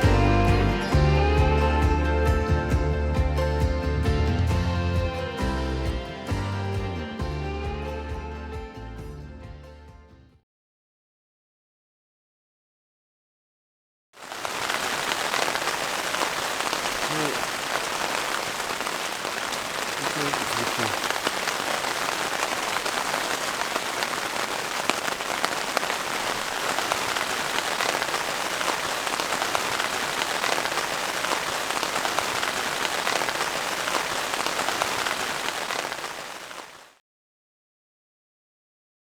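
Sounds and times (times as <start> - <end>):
heavy rain: 14.2 - 37.0.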